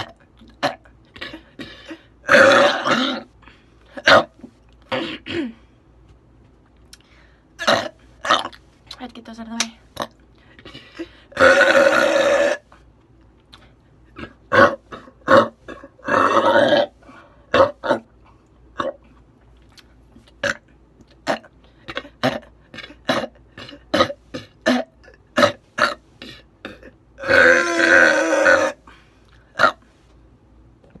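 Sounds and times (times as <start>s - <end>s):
woman burping: 4.9s - 5.6s, 7.6s - 8.5s, 21.2s - 28.7s.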